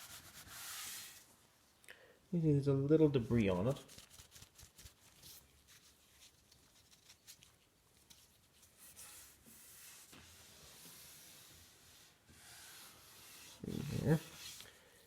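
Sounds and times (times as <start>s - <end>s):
cloth rubbing on wood: 0.0s - 1.3s, 8.6s - 14.7s.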